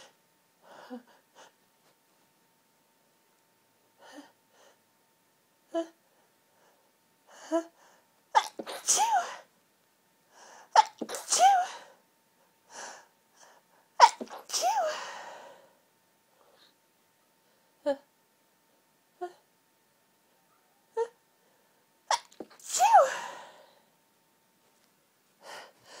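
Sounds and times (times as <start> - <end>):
woman sneezing: 8.4 - 9.5, 10.8 - 11.9, 14.0 - 15.2, 22.1 - 23.6.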